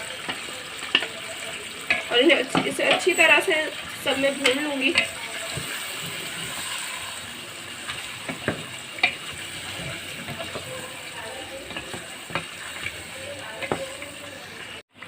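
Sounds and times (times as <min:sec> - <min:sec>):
chicken sizzling in hot oil: 0:00.0 - 0:15.0
spoon knocking against pan: 0:01.9 - 0:03.2, 0:08.2 - 0:10.9, 0:11.6 - 0:14.0.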